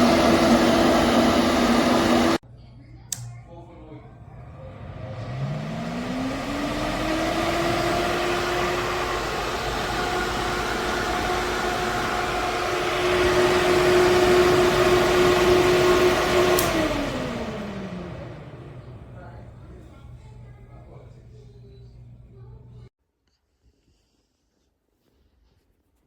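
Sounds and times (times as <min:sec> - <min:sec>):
exhaust fan humming: 0:00.0 - 0:22.9
fan switch click: 0:03.1 - 0:03.4, 0:16.2 - 0:17.1.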